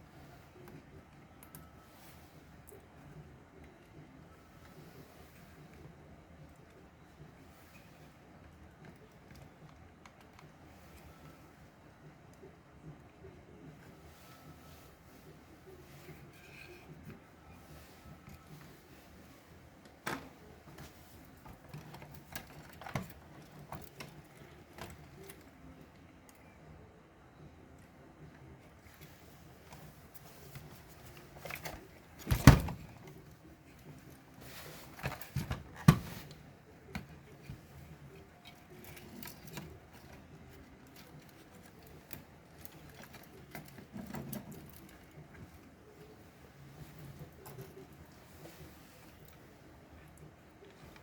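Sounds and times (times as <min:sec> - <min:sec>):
low room hum: 0:00.0 - 0:51.0.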